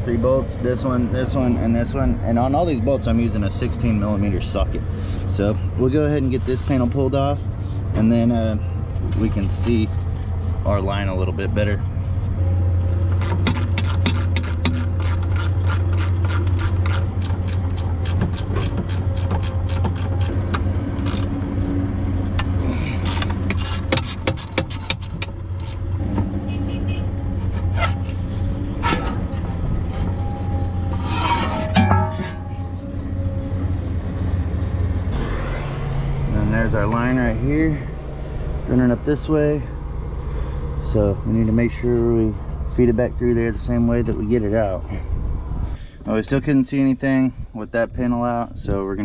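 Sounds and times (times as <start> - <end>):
low engine hum: 0.0 - 49.0
metal clinks and scrapes: 30.6 - 32.9.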